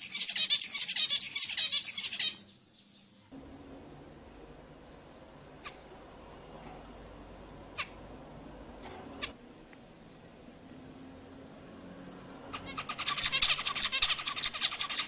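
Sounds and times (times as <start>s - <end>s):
zebra finches calling: 0.0s - 2.6s, 12.4s - 15.0s.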